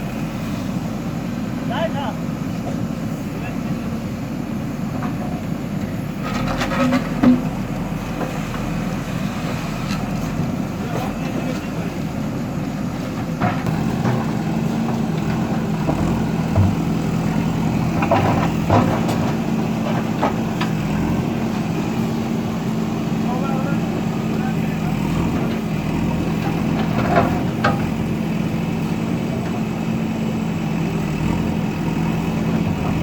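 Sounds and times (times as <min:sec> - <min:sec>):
diesel engine under load: 0:00.0 - 0:33.0
sharp clanks and knocks: 0:06.2 - 0:07.6, 0:17.8 - 0:20.9, 0:26.4 - 0:28.0.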